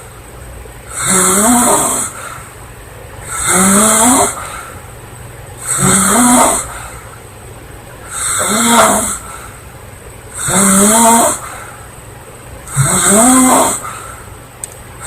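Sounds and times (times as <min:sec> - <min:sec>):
woman snoring: 0:00.9 - 0:02.2, 0:03.3 - 0:04.6, 0:05.6 - 0:06.8, 0:08.1 - 0:09.3, 0:10.4 - 0:11.5, 0:12.7 - 0:13.9.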